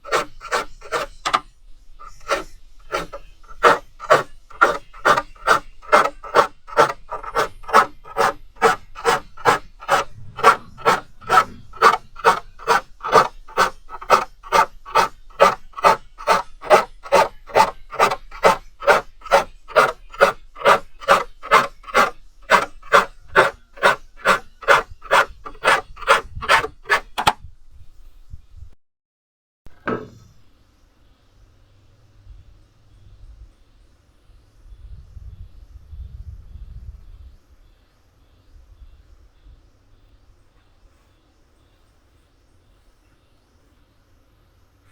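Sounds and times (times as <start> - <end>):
file rasping on saw teeth: 0.0 - 27.4.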